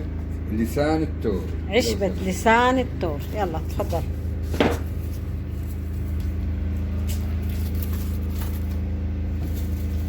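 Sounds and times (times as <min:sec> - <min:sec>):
low mechanical hum: 0:00.0 - 0:10.0
dried herbs crackling: 0:03.2 - 0:10.0.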